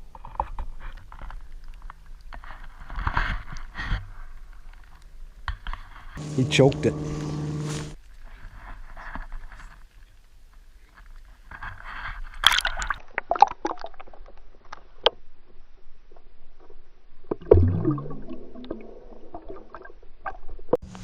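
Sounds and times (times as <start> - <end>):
water splashing against boat: 5.8 - 8.0
loud low sound: 6.2 - 8.0.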